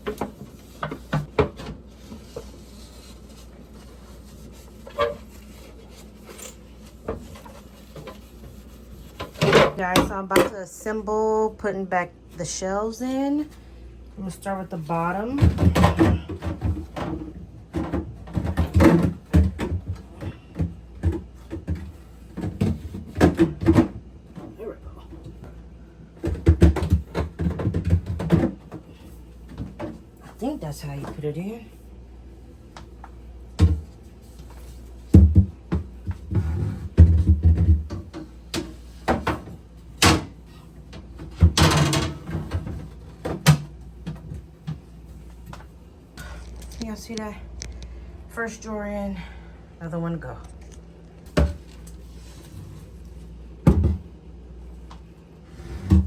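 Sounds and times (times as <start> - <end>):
fridge shelf clunking and scraping: 0.0 - 10.7, 14.5 - 31.7, 32.6 - 46.4, 51.2 - 56.0
drawer scraping slide: 55.5 - 56.0.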